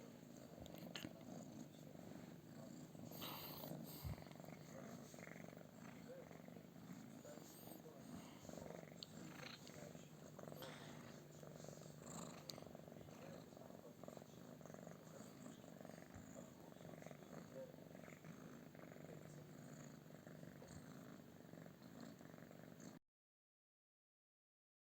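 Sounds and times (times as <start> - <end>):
cat purring: 0.0 - 23.0.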